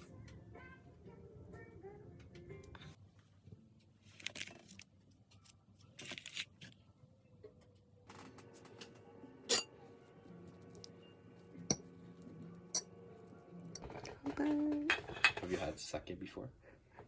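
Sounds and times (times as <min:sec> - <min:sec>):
glassware and dishes clinking: 0:09.5 - 0:09.7, 0:14.8 - 0:15.7.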